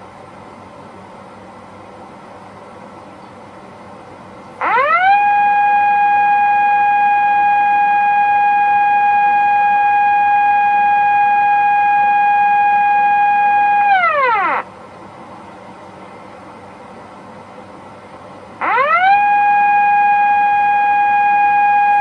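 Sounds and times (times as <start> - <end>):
siren from outdoor loudspeakers: 4.6 - 14.7, 18.6 - 22.0.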